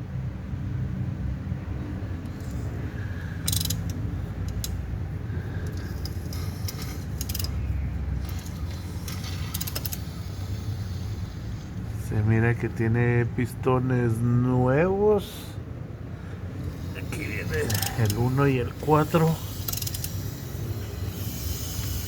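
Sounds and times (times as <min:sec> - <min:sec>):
steady low hum: 0:00.0 - 0:22.0
metal tools clinking and rattling: 0:17.5 - 0:20.5.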